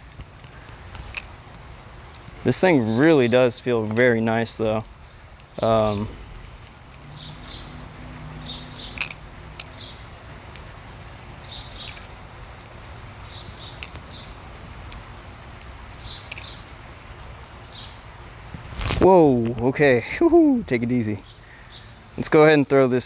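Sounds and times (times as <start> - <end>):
butterfly knife handles clicking: 0.0 - 1.4, 2.0 - 7.6, 8.9 - 9.9, 10.5 - 14.3, 14.9 - 16.6
bird chirping: 2.7 - 14.4, 15.0 - 16.7.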